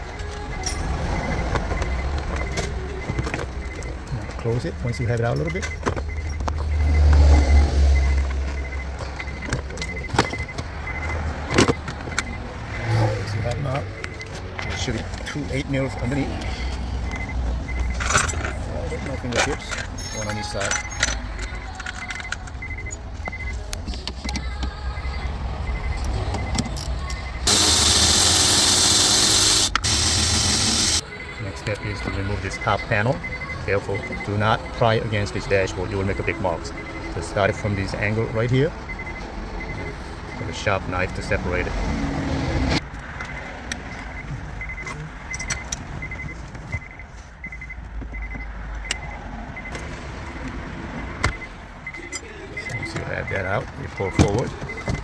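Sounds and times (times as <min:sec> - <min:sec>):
faint high beeps: 0:00.0 - 0:16.4, 0:22.0 - 0:23.7, 0:25.0 - 0:41.3, 0:51.2 - 0:55.0
short high beeps: 0:27.5 - 0:31.1.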